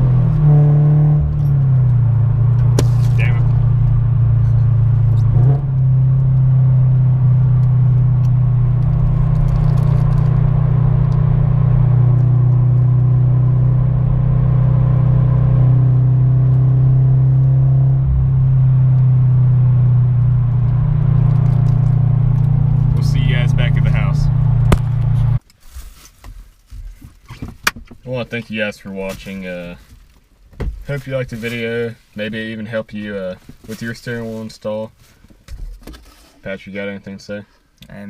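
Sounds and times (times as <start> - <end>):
car engine drone inside cabin: 0.0 - 25.4
road noise: 0.0 - 25.4.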